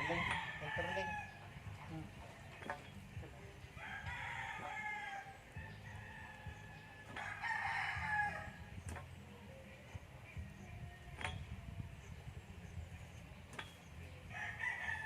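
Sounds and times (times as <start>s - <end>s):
rooster crowing: 0.0s - 1.4s, 3.8s - 8.6s, 14.3s - 15.0s.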